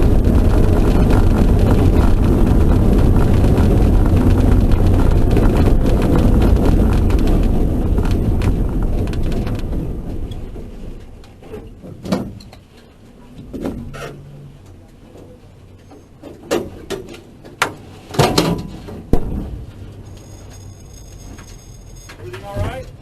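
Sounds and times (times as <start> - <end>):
car engine and wind rumble: 0.0 - 12.5.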